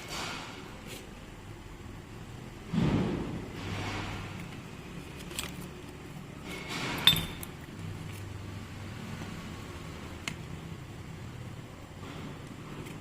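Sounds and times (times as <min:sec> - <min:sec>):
metal parts clicking: 0:06.6 - 0:07.7
metal clink: 0:07.0 - 0:07.6.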